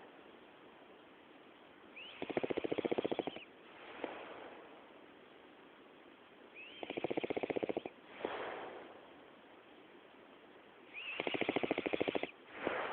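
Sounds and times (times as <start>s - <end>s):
breathy rush of breath: 8.1s - 9.1s, 12.5s - 12.9s.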